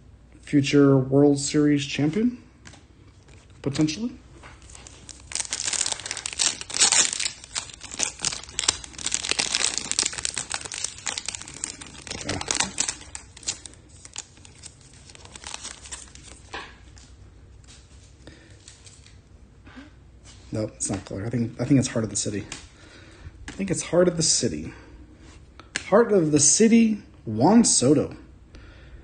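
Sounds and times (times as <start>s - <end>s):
wrapper crinkling and tearing: 3.3s - 17.1s.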